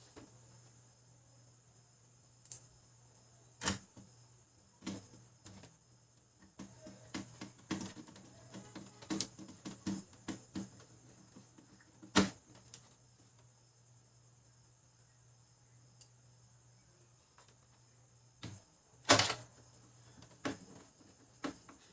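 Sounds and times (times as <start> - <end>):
printer parts clicking and knocking: 6.5 - 12.8, 18.4 - 19.6.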